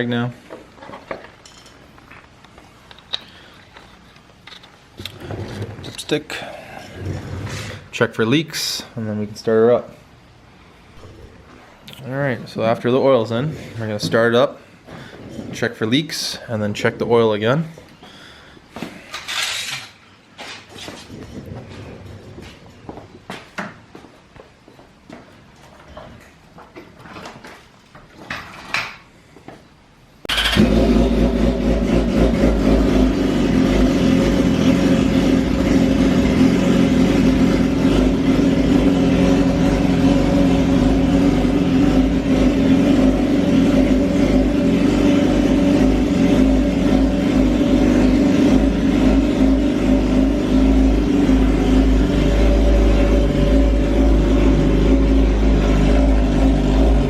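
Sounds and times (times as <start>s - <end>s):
motorcycle engine starting and idling: 30.3s - 57.0s.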